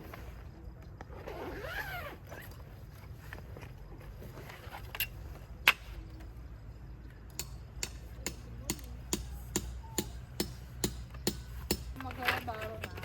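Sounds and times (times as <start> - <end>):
hammer strikes: 7.3 - 12.0.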